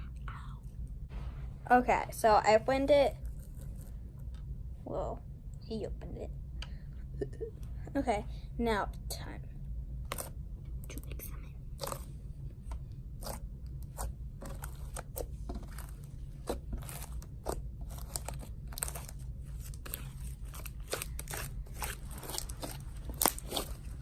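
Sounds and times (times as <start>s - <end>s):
slime squished by hand: 13.1s - 24.0s
wet crackles and pops: 13.2s - 24.0s.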